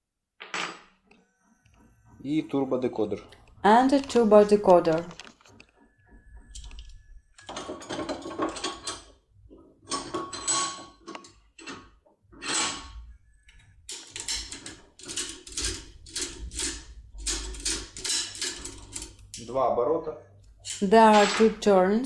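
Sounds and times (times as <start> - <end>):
metal scraping and clicking in lock: 9.8 - 19.5, 20.4 - 21.7.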